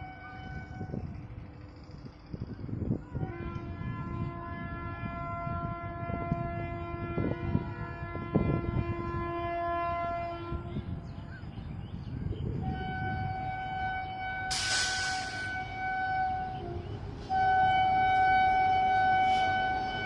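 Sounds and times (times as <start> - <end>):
locomotive horn blasts: 0.0 - 1.2, 3.1 - 11.0, 12.5 - 20.0
rumble of rolling trains: 0.0 - 20.0
higher-pitched horn: 12.6 - 20.0.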